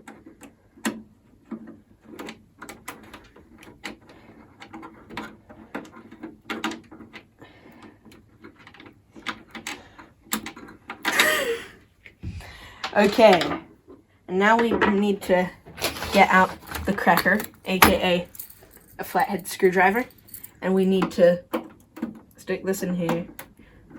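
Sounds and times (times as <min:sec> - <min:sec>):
screwdriver clicking and scraping: 0:15.7 - 0:18.9.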